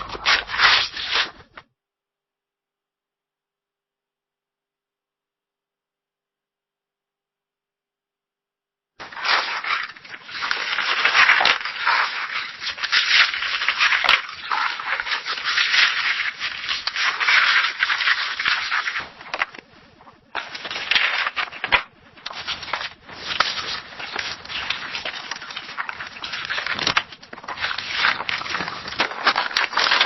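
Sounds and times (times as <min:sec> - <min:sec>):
book pages turning: 0:00.0 - 0:01.6, 0:09.0 - 0:30.0.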